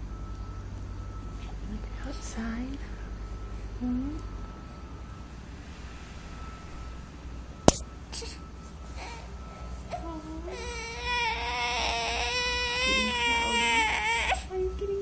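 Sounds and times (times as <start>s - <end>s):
sharp click: 7.7s - 7.9s
baby crying: 10.5s - 14.5s.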